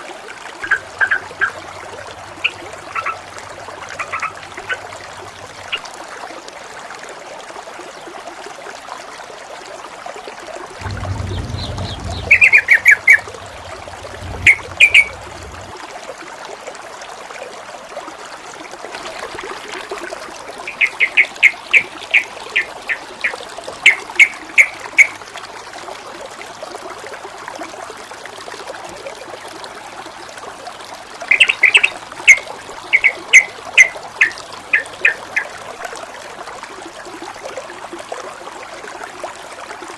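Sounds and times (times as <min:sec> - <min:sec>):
water trickling and splashing: 0:00.0 - 0:39.9
bird chirping: 0:10.8 - 0:15.7, 0:31.3 - 0:35.2
low rumble: 0:10.8 - 0:15.8.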